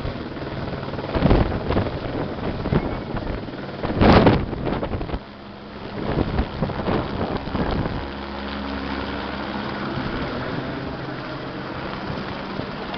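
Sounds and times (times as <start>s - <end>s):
helicopter turbine and rotor: 0.0s - 12.9s
wind buffeting microphone: 0.0s - 12.9s.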